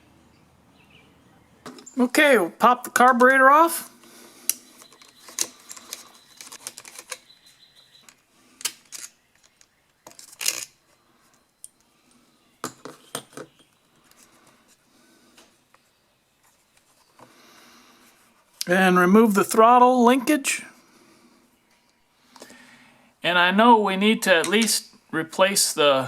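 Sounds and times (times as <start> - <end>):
hand tools clicking and clattering: 4.4 - 7.3, 8.0 - 10.7.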